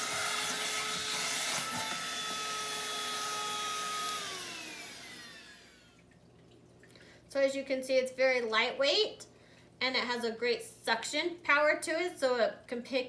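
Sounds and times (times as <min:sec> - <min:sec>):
handheld vacuum running: 0:00.0 - 0:05.8.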